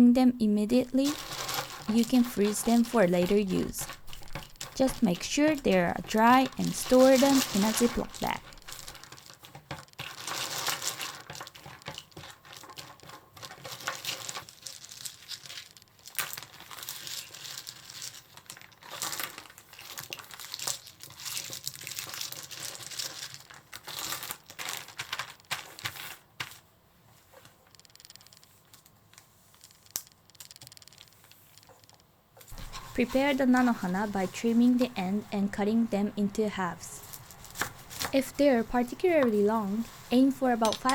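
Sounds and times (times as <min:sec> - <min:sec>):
plastic bag crinkling: 0:00.8 - 0:26.5, 0:32.5 - 0:40.9.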